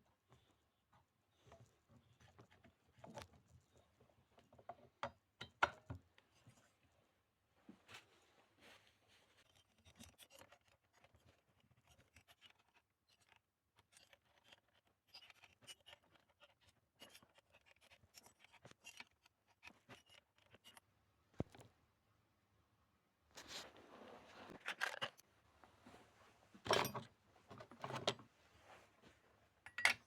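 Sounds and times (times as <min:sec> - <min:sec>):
small clicks and scrapes of tools: 0:09.2 - 0:21.7, 0:24.4 - 0:25.3.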